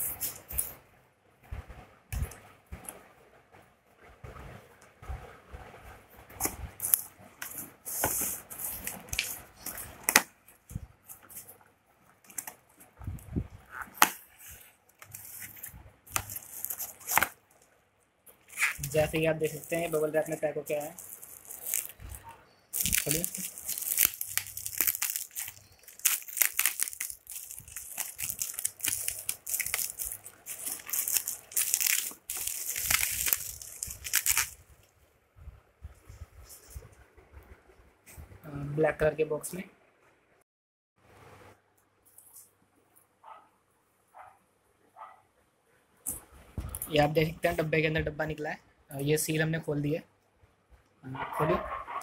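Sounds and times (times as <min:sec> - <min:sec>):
bubble wrap crinkling: 0:06.4 - 0:11.5, 0:13.7 - 0:17.7, 0:18.4 - 0:34.9
box packing rustling: 0:13.9 - 0:17.3, 0:22.8 - 0:34.6.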